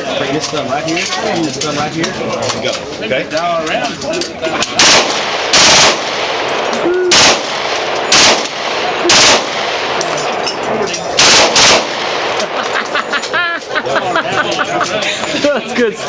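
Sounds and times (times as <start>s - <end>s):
crackle of gunfire: 4.7s - 10.2s, 11.2s - 12.8s
machine gun bursts: 4.8s - 6.1s, 7.1s - 9.6s, 11.2s - 12.2s.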